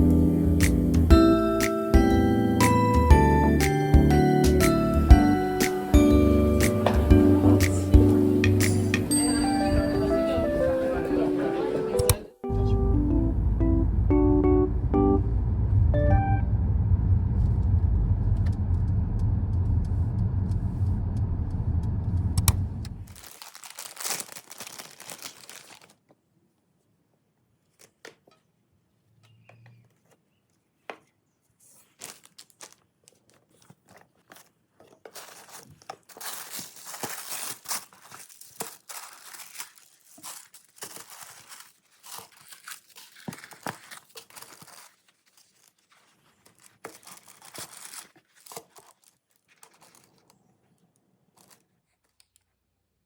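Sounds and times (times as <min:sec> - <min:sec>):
loud low rumble: 0:12.5 - 0:23.1
paper crinkling and tearing: 0:23.0 - 0:26.1, 0:31.6 - 0:52.4.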